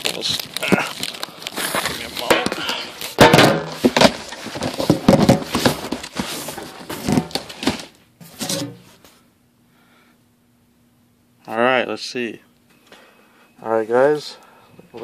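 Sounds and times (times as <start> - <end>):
packaging rustling and crackling: 0.0 - 8.0.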